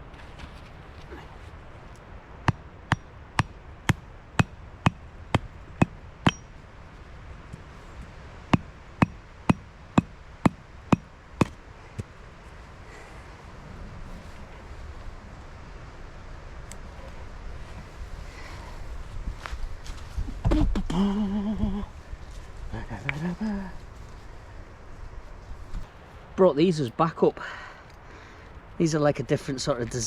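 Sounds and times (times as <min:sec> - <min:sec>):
hammering wooden tent pegs: 0:02.4 - 0:06.5, 0:08.5 - 0:12.1.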